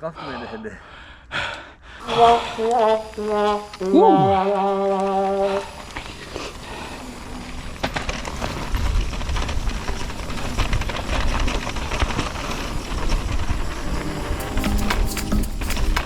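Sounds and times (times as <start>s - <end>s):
bike tyres rolling over dirt: 4.5s - 14.0s.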